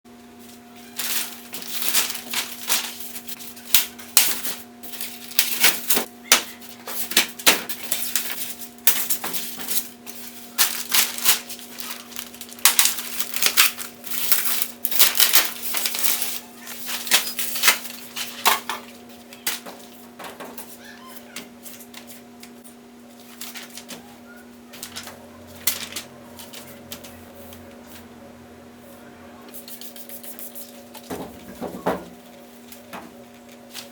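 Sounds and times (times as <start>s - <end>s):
packaging crinkling and clicking: 0.8s - 19.9s, 23.1s - 24.1s, 24.7s - 27.6s
steady low hum: 21.5s - 33.9s.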